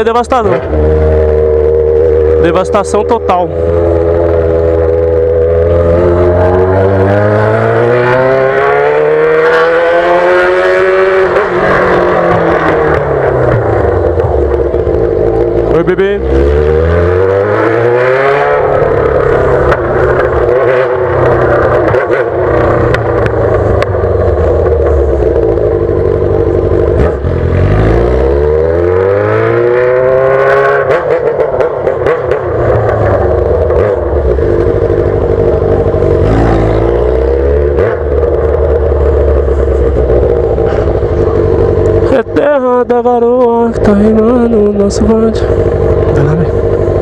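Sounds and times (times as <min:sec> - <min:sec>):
loud motorcycle engine revving: 0:00.0 - 0:47.0.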